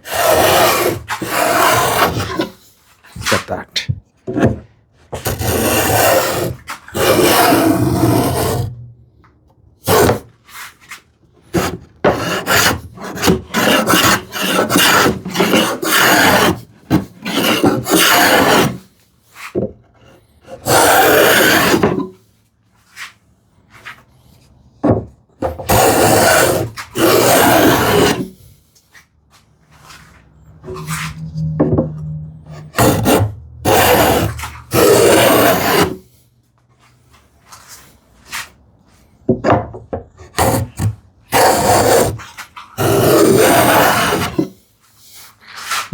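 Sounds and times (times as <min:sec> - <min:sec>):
hand plane cutting wood: 0:00.0 - 0:02.6, 0:04.3 - 0:08.8, 0:09.9 - 0:10.3, 0:11.5 - 0:18.8, 0:20.0 - 0:22.0, 0:25.4 - 0:28.3, 0:32.5 - 0:36.0, 0:40.2 - 0:44.5.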